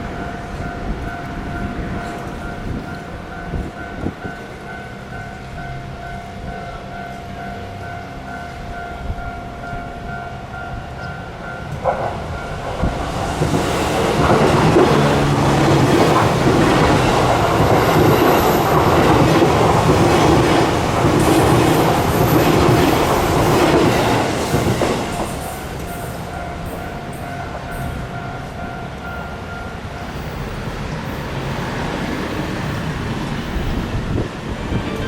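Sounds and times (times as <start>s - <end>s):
level-crossing warning bell: 0.0s - 32.9s, 34.5s - 35.0s
train wheels clattering over rails: 11.7s - 26.3s.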